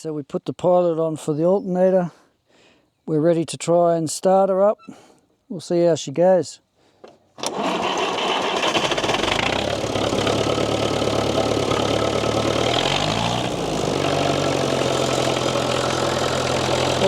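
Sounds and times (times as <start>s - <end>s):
tractor diesel engine starting: 7.4s - 17.0s.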